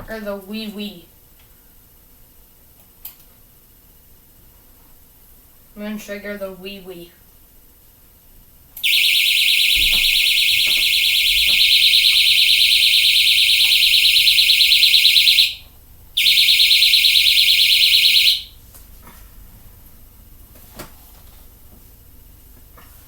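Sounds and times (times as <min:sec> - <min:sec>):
crossing signal buzzing: 0:08.8 - 0:18.7.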